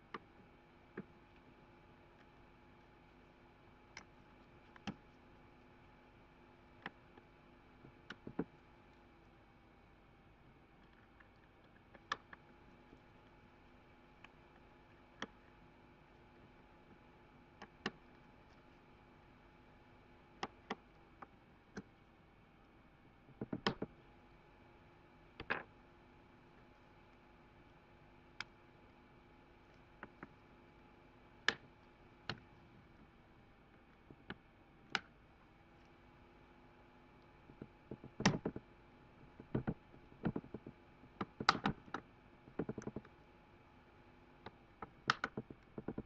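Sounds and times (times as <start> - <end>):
clicks and taps of small tools: 39.4 - 42.0, 42.6 - 43.1, 44.4 - 46.0.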